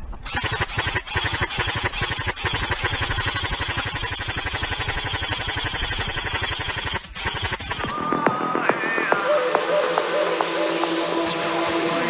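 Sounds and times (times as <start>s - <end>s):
toy gun rapid fire rattle: 0.0s - 8.1s.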